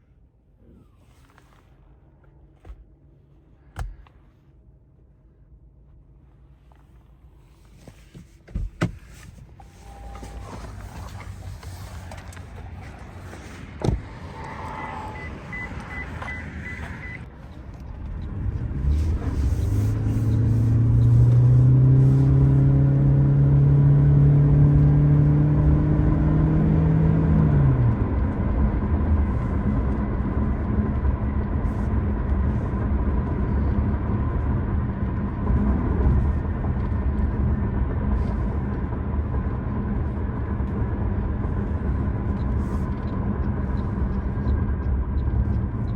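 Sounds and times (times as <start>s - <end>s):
road noise: 6.1s - 45.9s
faint steady whine: 9.6s - 13.0s
car engine accelerating: 9.6s - 45.9s
high beeps: 14.8s - 17.2s.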